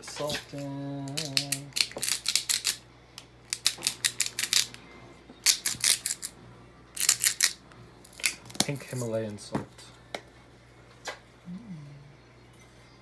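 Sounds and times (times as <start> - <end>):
salt grinder crunching: 1.1 - 2.8, 3.5 - 4.8, 5.4 - 6.4, 7.0 - 9.0.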